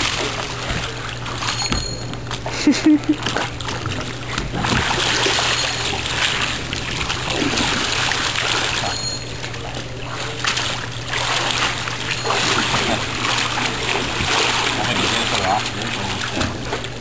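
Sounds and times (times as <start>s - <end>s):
pool water splashing: 0.0s - 17.0s.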